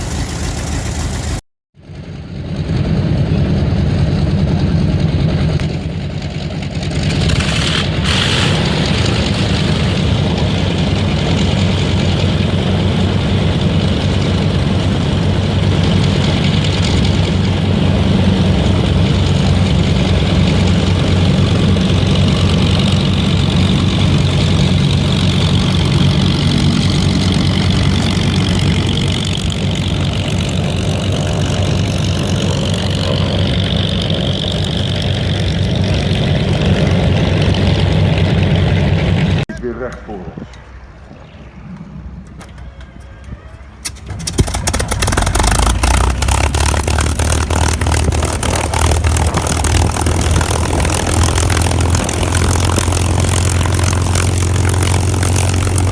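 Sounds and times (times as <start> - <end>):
piston aircraft engine idling: 0.0 - 40.9, 41.8 - 55.9.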